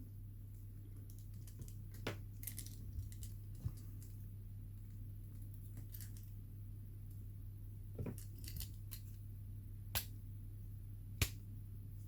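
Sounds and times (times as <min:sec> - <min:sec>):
low steady hum: 0:00.0 - 0:12.0
small metal parts clicking: 0:01.1 - 0:04.2, 0:05.7 - 0:06.3, 0:08.1 - 0:09.2.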